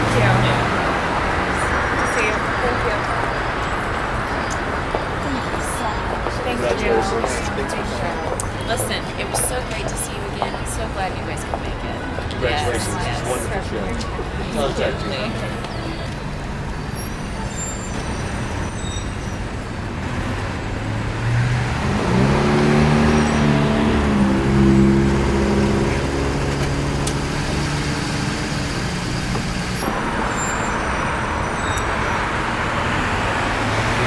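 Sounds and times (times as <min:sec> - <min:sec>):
road traffic: 0:00.0 - 0:34.0
car engine running close by: 0:13.2 - 0:34.0.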